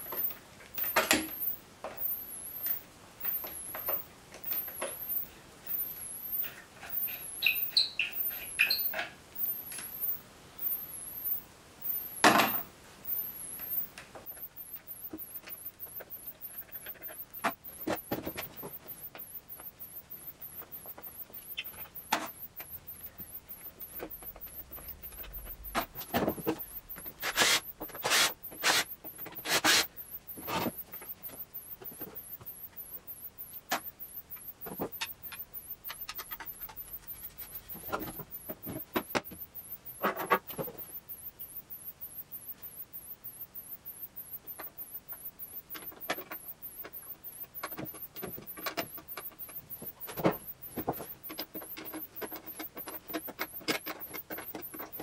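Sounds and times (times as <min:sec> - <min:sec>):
scraping or rubbing: 0:24.4 - 0:30.8.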